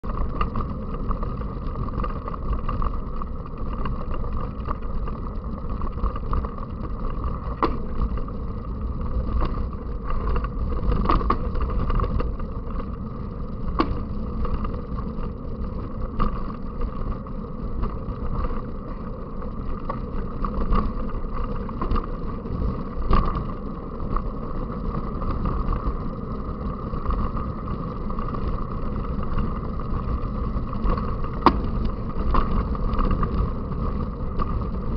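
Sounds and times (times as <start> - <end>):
bicycle riding rumble: 0.0 - 34.9
bike knocks and clicks: 6.3 - 8.3, 9.4 - 12.4, 13.7 - 14.7, 30.9 - 33.2.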